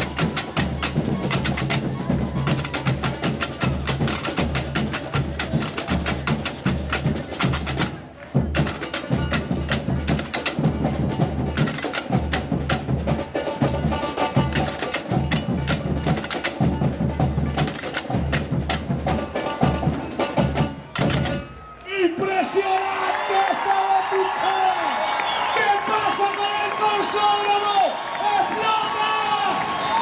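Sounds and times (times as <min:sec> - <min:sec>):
samba drum ensemble: 0:00.0 - 0:21.8.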